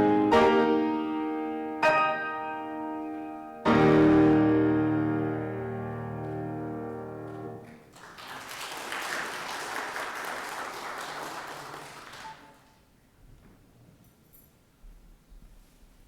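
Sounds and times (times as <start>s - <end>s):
keyboard chord: 0.0s - 7.6s
congregation applauding: 7.2s - 12.8s.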